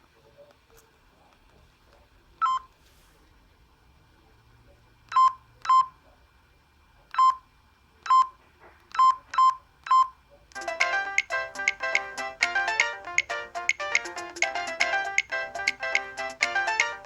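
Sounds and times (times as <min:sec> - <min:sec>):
phone key beeps: 0:05.1 - 0:05.9, 0:07.1 - 0:07.4, 0:08.1 - 0:10.1
phone ringtone melody: 0:10.6 - 0:17.0.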